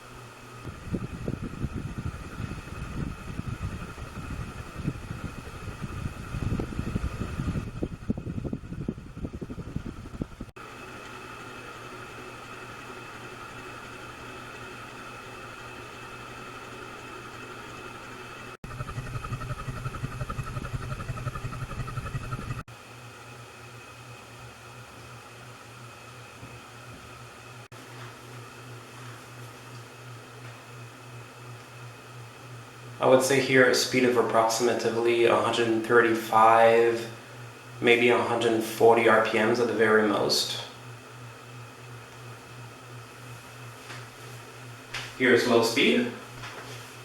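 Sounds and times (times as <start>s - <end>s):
ceiling fan running: 0.0s - 47.0s
low rumbling: 0.7s - 10.5s, 18.6s - 22.7s
steady high tone: 18.6s - 22.6s.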